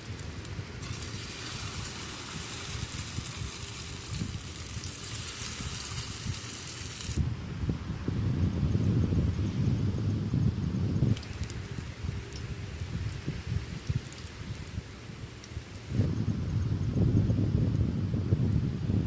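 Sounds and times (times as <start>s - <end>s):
steady hiss: 0.0s - 19.0s
wind rumbling on microphone: 0.0s - 19.0s.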